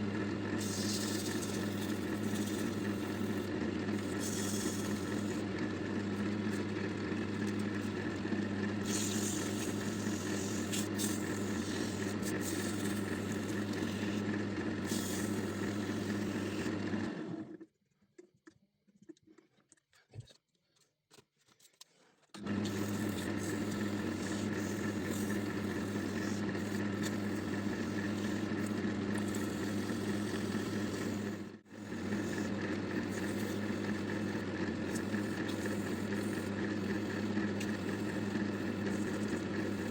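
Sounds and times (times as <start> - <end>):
wood lathe running: 0.0 - 17.6, 22.4 - 39.9
turning tool scraping: 0.6 - 17.0, 21.8 - 39.9.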